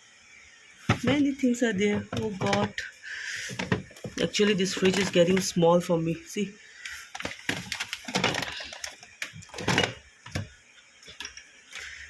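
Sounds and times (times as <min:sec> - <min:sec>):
food packets rustling: 0:03.5 - 0:05.6, 0:07.0 - 0:10.0.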